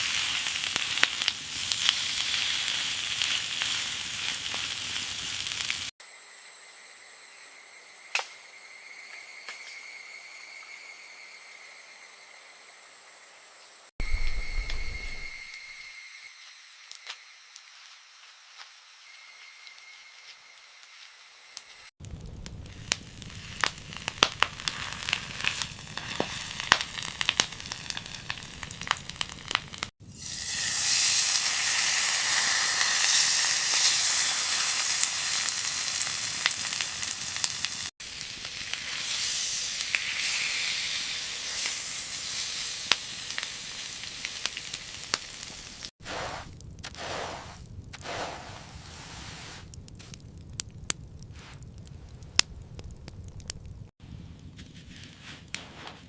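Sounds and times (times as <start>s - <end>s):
food frying in hot oil: 0.0s - 5.9s, 22.0s - 47.6s
crackling pops: 22.0s - 29.9s, 42.8s - 48.9s, 49.5s - 56.0s.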